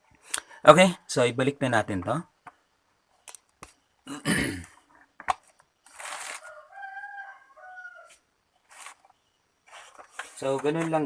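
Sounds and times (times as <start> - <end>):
plastic parts scraping: 4.9 - 6.5, 8.6 - 11.0
rooster crowing: 6.2 - 8.3.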